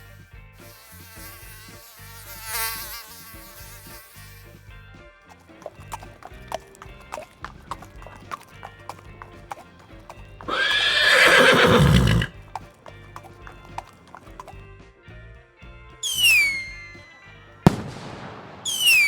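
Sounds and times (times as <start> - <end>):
horse hooves clip-clopping: 0.0 - 14.7
background music: 0.0 - 19.0
horse neighing: 5.4 - 14.5.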